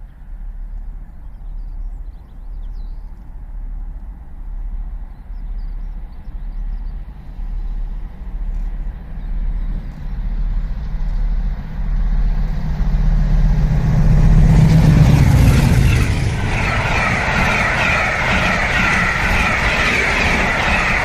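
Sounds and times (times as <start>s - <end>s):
diesel locomotives rumbling: 7.0s - 21.0s
train rushing past rattling: 10.0s - 21.0s.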